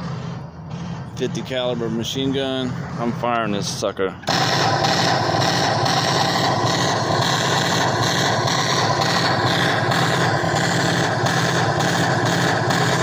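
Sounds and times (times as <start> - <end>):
machine-gun fire sound effect: 4.2 - 13.0.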